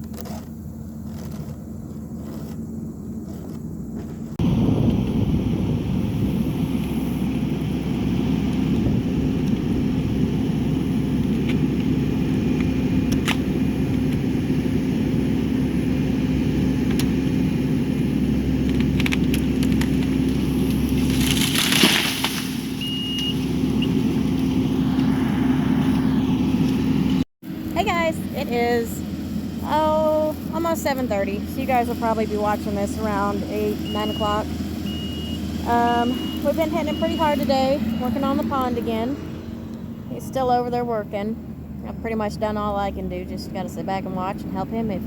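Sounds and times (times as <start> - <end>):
engine running: 0.0 - 45.0
crackling crash: 18.9 - 25.1.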